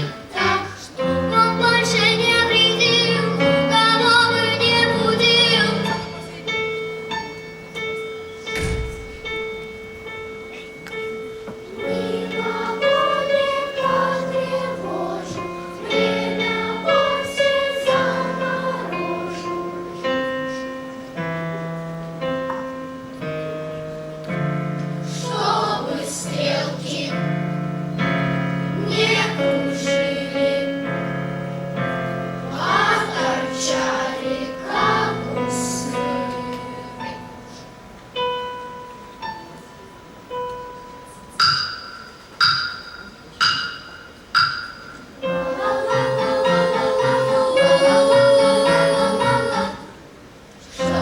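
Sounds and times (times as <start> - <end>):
choir singing: 0.0 - 6.4, 11.7 - 21.1, 25.0 - 37.6, 45.2 - 51.0
piano accompaniment: 0.0 - 51.0.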